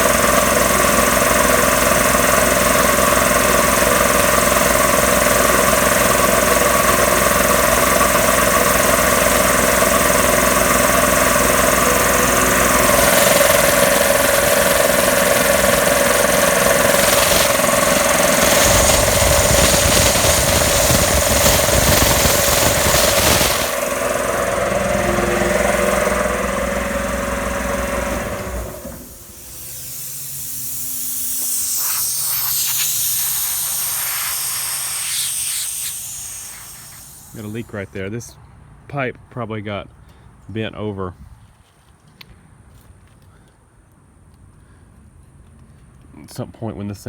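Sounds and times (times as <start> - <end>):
compressed air hissing from pipe: 0.0 - 24.3, 28.8 - 37.9
air compressor pump running: 0.0 - 38.1.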